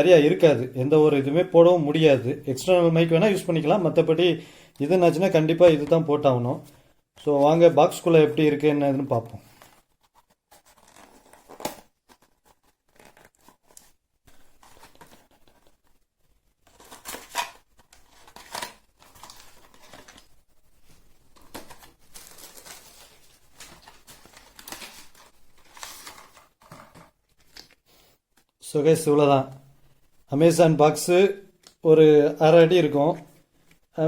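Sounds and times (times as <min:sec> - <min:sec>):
cardboard ripping: 0:10.5 - 0:15.6, 0:16.6 - 0:20.3
packaging tearing and crinkling: 0:10.5 - 0:15.7, 0:16.6 - 0:20.4, 0:21.4 - 0:27.8.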